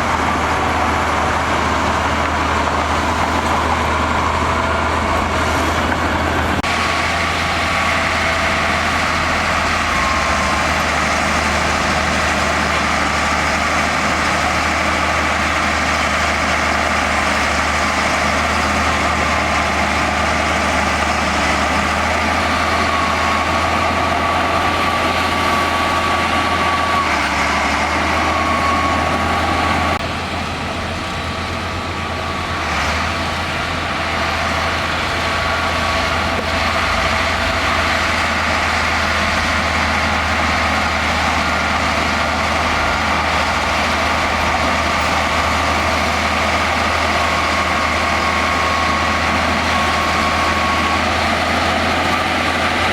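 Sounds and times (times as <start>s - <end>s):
bulldozer diesel engine running: 0.0s - 52.9s.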